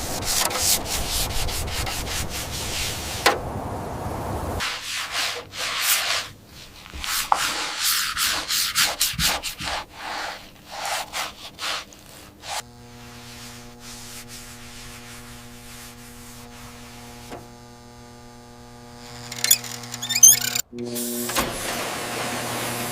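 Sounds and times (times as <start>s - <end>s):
scrubbing rusty metal: 0.0s - 3.4s, 7.3s - 17.4s, 19.0s - 20.6s
small electric motor humming: 12.6s - 21.4s.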